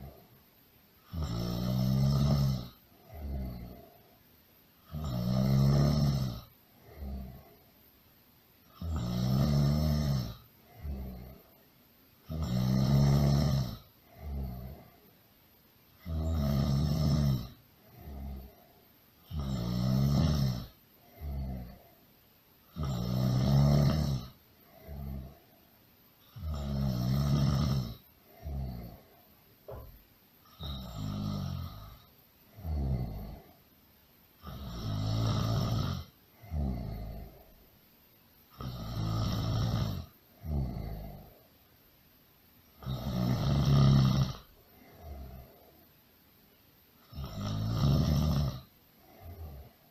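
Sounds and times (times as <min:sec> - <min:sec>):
quiet breaths: 0:00.0 - 0:49.9
loud snoring: 0:01.0 - 0:04.0, 0:04.8 - 0:07.6, 0:08.7 - 0:11.6, 0:12.2 - 0:15.0, 0:16.0 - 0:18.6, 0:19.2 - 0:21.9, 0:22.7 - 0:25.5, 0:26.2 - 0:33.6, 0:34.4 - 0:37.5, 0:38.5 - 0:41.4, 0:42.8 - 0:45.7, 0:47.0 - 0:49.8.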